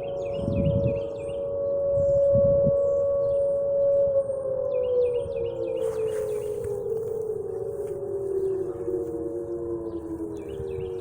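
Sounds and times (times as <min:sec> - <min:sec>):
warning siren steady tone: 0:00.0 - 0:11.0.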